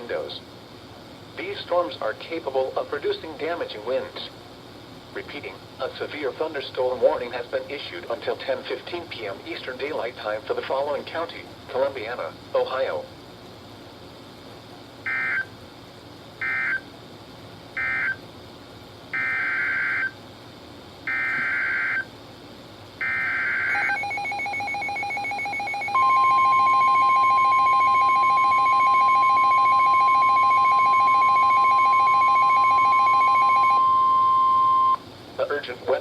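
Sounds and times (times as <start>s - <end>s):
rapidly pulsing alarm: 15.0s - 15.5s, 16.4s - 16.8s, 17.8s - 18.2s, 19.1s - 20.2s, 21.1s - 22.1s, 23.0s - 35.0s
steady warning alarm tone: 15.0s - 15.5s, 16.4s - 16.8s, 17.8s - 18.2s, 19.1s - 20.2s, 21.1s - 22.1s, 23.0s - 35.0s.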